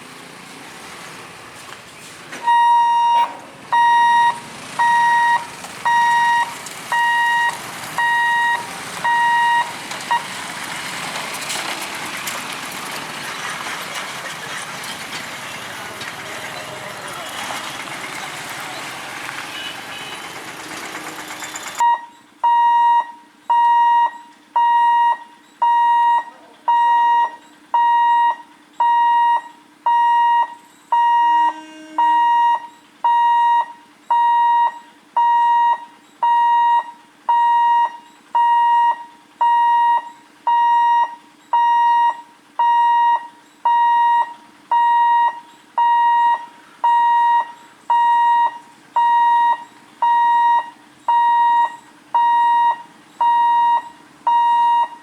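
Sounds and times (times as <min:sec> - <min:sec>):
loud traffic noise: 0:00.0 - 0:02.5, 0:03.2 - 0:21.9, 0:31.2 - 0:32.7
electronic warning alarm beeping: 0:02.4 - 0:10.3, 0:21.2 - 0:55.0.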